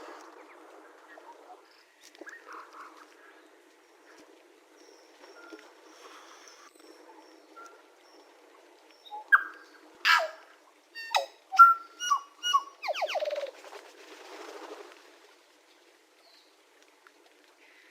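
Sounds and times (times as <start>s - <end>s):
bird singing whistled notes: 11.0s - 13.4s.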